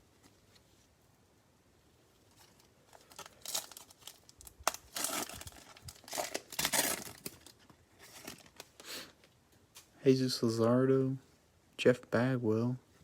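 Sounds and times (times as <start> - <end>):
foil wrapper tearing and crinkling: 2.4 - 8.9.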